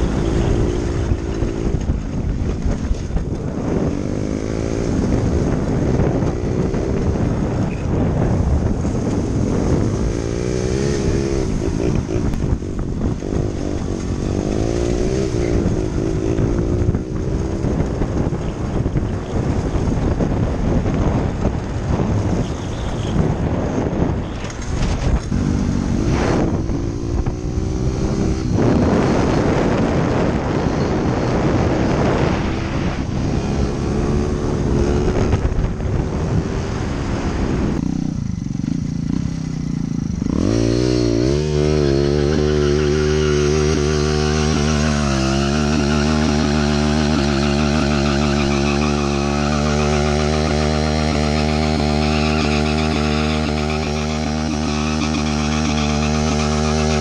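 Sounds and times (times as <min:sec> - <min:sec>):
wind noise on microphone: 0:00.0 - 0:57.0.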